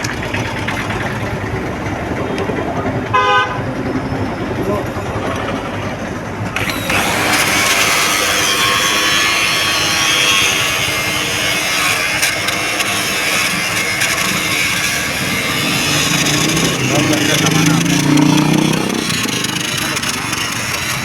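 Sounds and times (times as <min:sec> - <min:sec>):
angle grinder grinding steel: 0:05.0 - 0:21.0.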